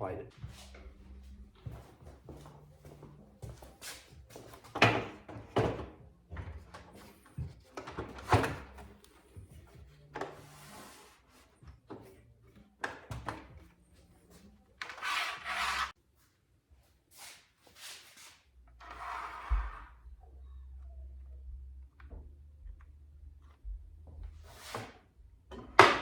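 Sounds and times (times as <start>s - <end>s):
wood scraping on wood: 14.9s - 16.0s.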